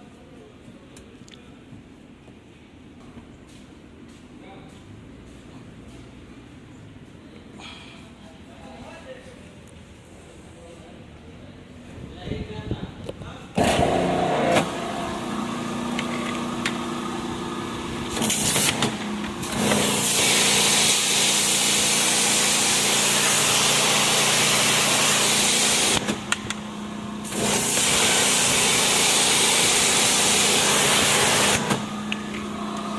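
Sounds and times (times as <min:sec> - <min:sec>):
pressure washer motor hum: 0:13.6 - 0:32.9
water spraying: 0:18.0 - 0:26.1, 0:27.2 - 0:31.8.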